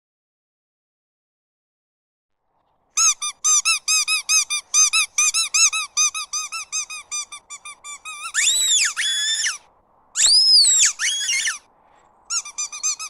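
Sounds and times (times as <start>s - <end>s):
squeaky dog toy squeaks: 3.0s - 9.6s, 10.2s - 11.6s, 12.3s - 13.0s.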